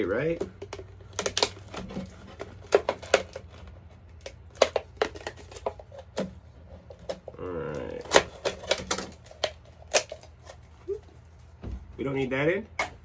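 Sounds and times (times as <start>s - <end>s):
knife cutting plastic bottle: 0.3s - 10.6s.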